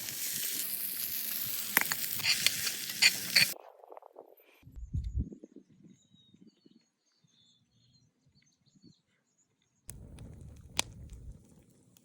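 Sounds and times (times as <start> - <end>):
faint bird chirps: 4.8 - 9.8
low rumbling noise: 9.9 - 11.6
sharp crack: 9.9 - 11.6.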